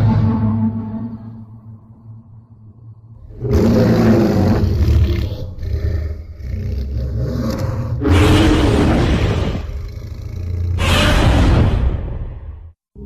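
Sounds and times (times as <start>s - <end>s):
loud long monster roar: 3.2s - 12.4s.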